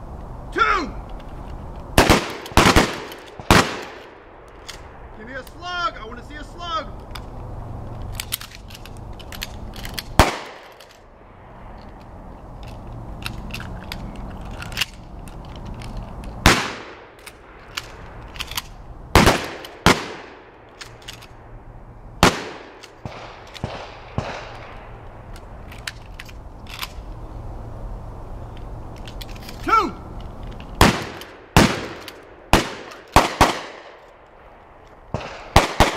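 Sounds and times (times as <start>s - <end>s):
shotgun blasts: 2.0s - 4.2s, 10.2s - 10.7s, 16.4s - 17.1s, 19.1s - 20.5s, 22.2s - 24.8s, 30.8s - 34.0s, 35.1s - 35.9s.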